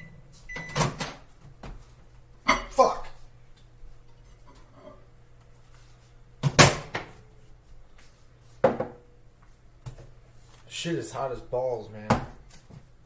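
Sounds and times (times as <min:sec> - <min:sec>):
low appliance hum: 0:00.0 - 0:13.0
dishes clattering: 0:02.5 - 0:03.0.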